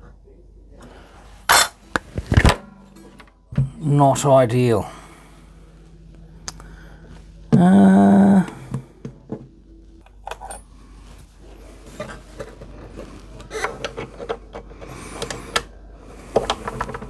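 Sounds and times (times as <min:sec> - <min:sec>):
tools clicking and rattling: 0:01.5 - 0:02.6.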